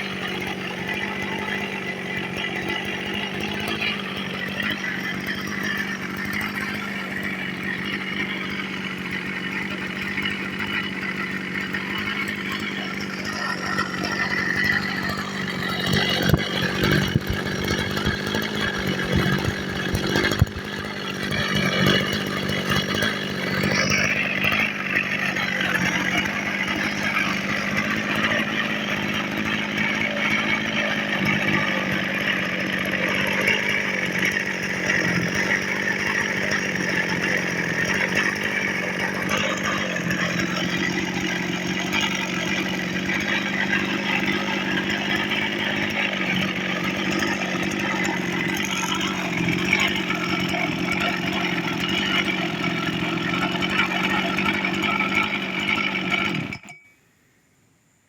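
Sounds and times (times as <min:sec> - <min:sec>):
brush cutter engine running: 0:00.0 - 0:56.8.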